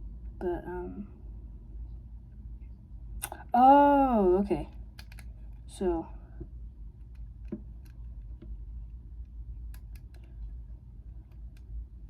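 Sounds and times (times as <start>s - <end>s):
steady low hum: 0.0s - 12.0s
plastic puzzle cube clicking: 5.0s - 5.3s.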